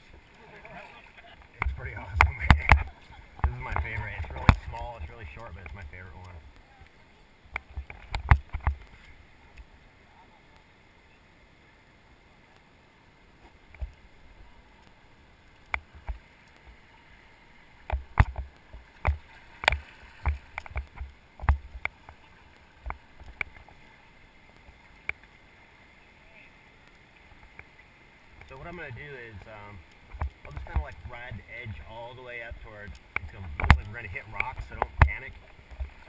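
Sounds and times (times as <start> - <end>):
river water rushing: 0.0 - 36.0
paddles knocking on raft: 1.5 - 5.9, 30.0 - 36.0.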